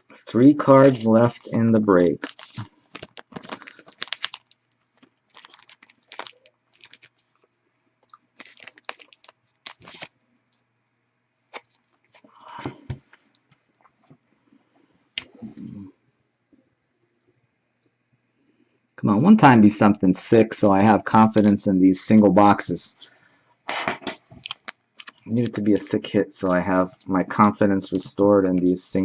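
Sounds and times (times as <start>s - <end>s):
plastic sleeves rustling: 0.1s - 10.6s, 11.5s - 14.1s, 21.0s - 22.6s, 24.2s - 29.0s.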